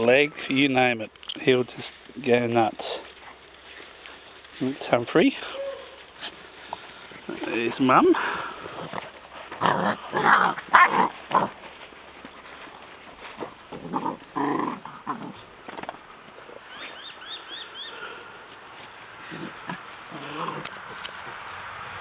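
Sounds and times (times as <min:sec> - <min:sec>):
puppies growling and yapping: 0:08.5 - 0:11.8, 0:13.3 - 0:15.6, 0:19.2 - 0:21.1.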